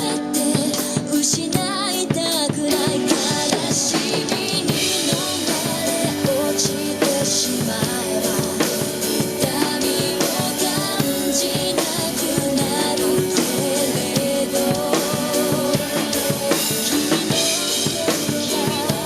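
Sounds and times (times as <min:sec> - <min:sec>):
drum kit playing: 0:00.0 - 0:19.0
pop-rock backing track: 0:00.0 - 0:19.0.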